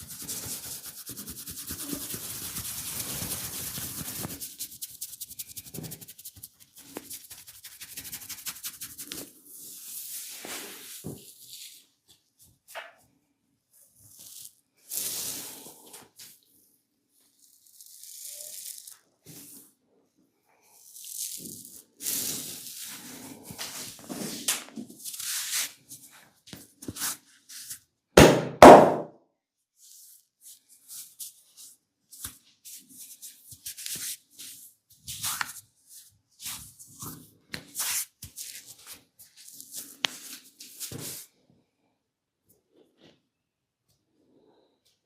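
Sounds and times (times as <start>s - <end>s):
hands rubbing on skin: 0.0s - 11.8s, 29.8s - 41.3s.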